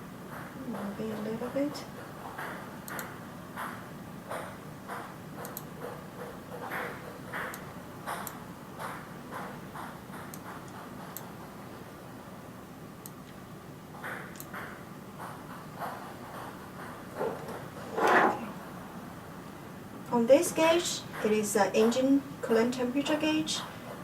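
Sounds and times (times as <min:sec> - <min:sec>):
light mechanical clicks: 0:02.8 - 0:03.2, 0:13.0 - 0:13.4, 0:14.3 - 0:14.6.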